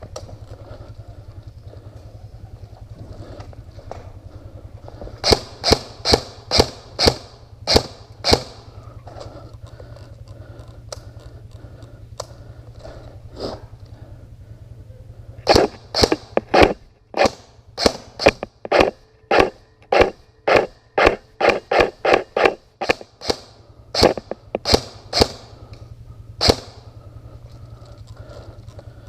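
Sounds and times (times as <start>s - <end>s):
airsoft guns firing single shots: 5.2s - 8.6s, 15.5s - 25.5s, 26.4s - 26.8s.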